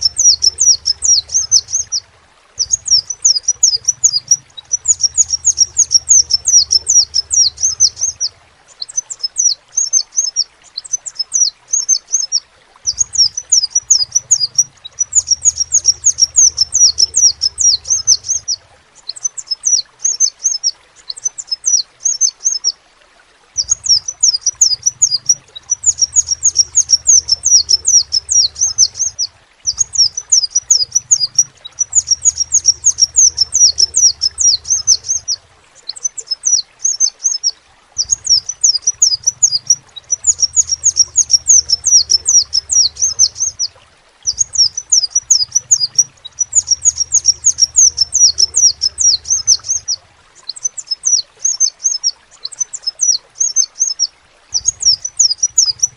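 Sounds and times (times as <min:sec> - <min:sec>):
sunbird singing high chirps: 0:00.0 - 0:02.0, 0:02.6 - 0:22.7, 0:23.6 - 0:55.9.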